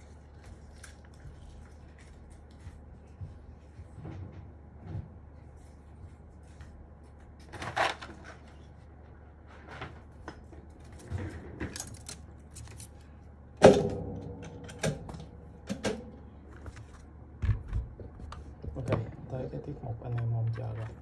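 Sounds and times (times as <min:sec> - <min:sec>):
keyboard parts clicking and rustling: 0:10.7 - 0:13.0.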